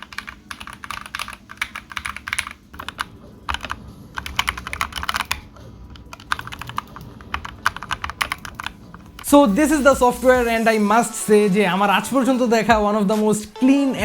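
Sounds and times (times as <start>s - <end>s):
mechanical keyboard typing: 0.0s - 9.4s.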